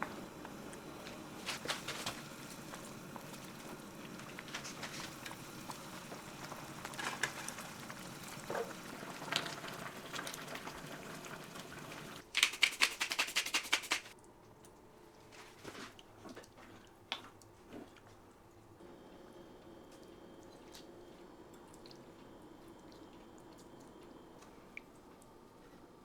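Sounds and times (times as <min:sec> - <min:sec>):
fast run of sharp taps: 0:12.4 - 0:14.1.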